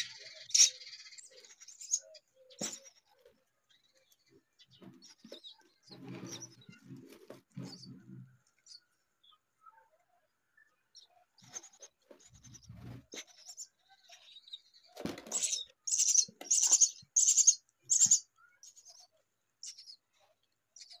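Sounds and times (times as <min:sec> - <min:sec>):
baby birds calling loudly: 0:00.0 - 0:03.2, 0:11.4 - 0:20.0
soft bird chirps: 0:00.0 - 0:21.0.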